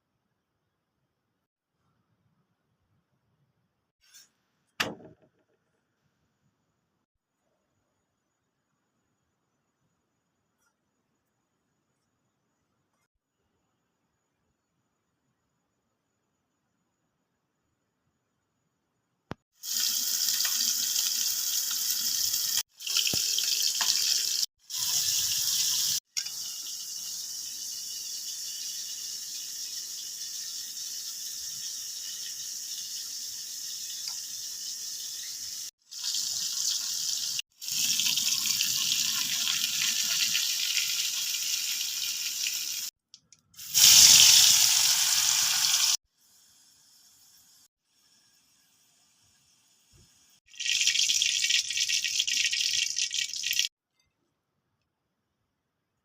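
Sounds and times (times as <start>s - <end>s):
tap water running: 19.6s - 42.9s, 50.5s - 53.7s.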